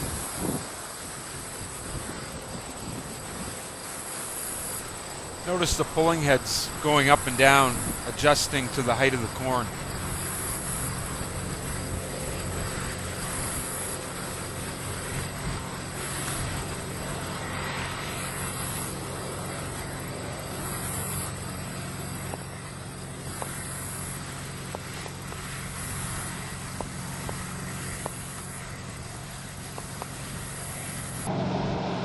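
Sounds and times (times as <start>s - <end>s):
machine engine hum: 0.0s - 32.0s.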